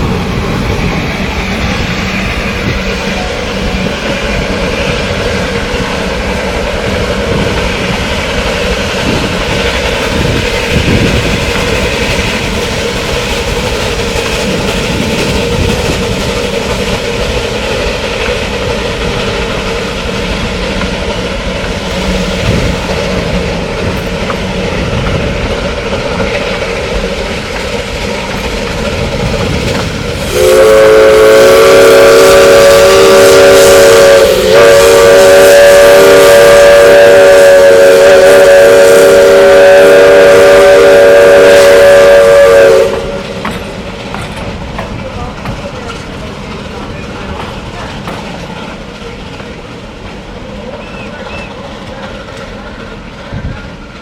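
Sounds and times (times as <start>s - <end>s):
steam train rumbling: 0.0s - 54.0s
steam locomotive whistle: 30.2s - 43.4s, 50.6s - 53.8s.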